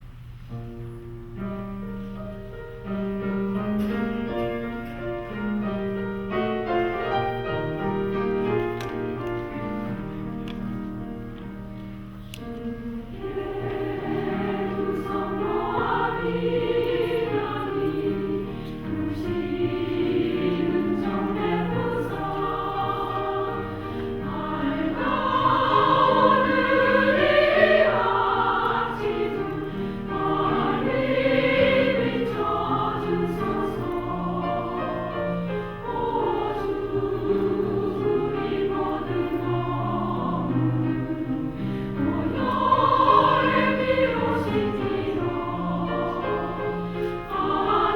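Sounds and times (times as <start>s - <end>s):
women's choir singing: 12.8s - 47.9s.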